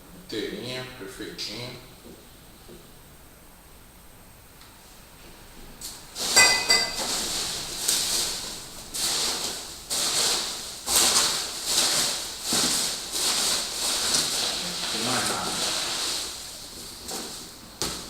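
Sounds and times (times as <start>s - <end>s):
packaging rustling and crinkling: 6.1s - 18.0s
short ringing clink: 6.4s - 7.0s.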